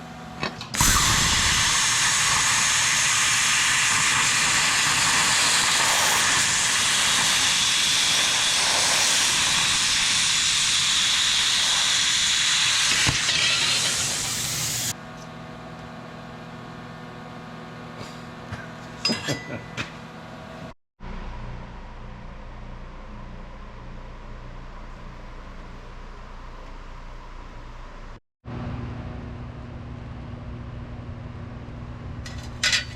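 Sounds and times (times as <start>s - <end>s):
mechanical hum: 0.0s - 32.9s
welding arc hissing: 0.8s - 15.0s.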